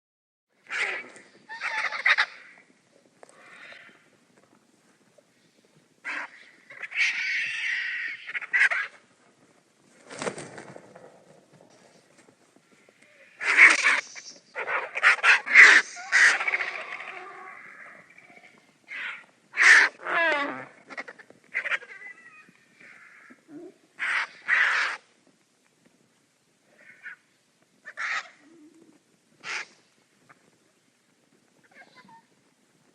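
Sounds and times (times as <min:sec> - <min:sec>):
vultures harsh raspy calls: 0:00.6 - 0:04.2, 0:06.0 - 0:09.0, 0:12.7 - 0:25.1, 0:26.7 - 0:28.8, 0:29.4 - 0:30.4.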